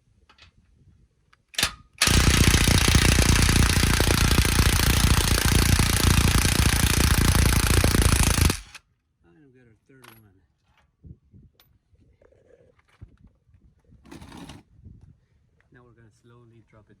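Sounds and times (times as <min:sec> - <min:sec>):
impact wrench hammering: 0:01.6 - 0:08.8.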